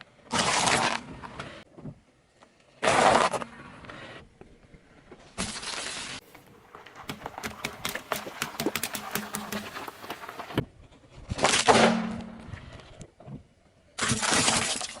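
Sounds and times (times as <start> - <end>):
objects crunching under car tyre: 5.6 - 10.6.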